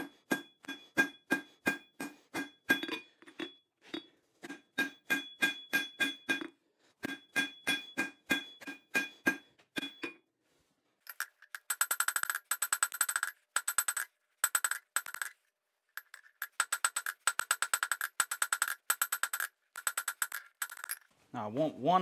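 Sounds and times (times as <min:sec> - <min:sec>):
hammer ringing on anvil: 0:07.1 - 0:10.1.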